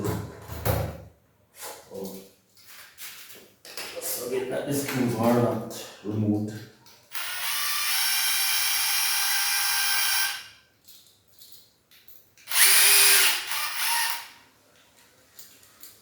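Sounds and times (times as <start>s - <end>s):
power drill driving screws: 7.1s - 10.5s, 12.5s - 14.4s.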